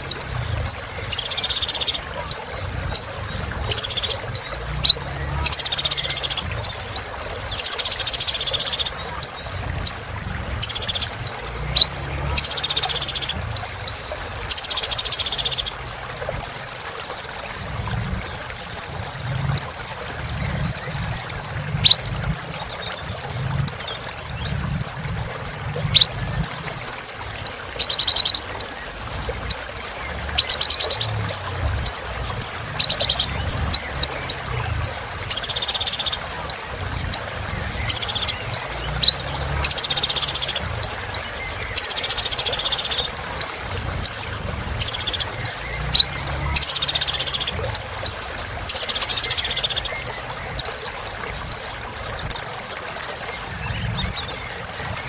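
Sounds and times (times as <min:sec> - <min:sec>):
bird chirping: 0:00.0 - 0:44.2
bird buzzy trills: 0:00.0 - 0:55.0.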